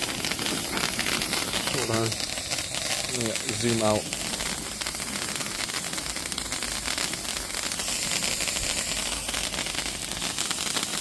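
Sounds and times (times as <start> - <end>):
firework fountain crackling hiss: 0.0 - 11.0.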